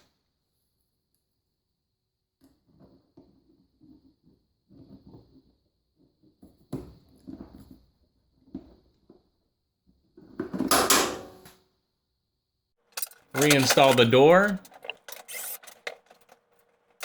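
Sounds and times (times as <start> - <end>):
sharp clicks and knocks: 13.0 - 16.6
scraping rattle: 13.0 - 17.0.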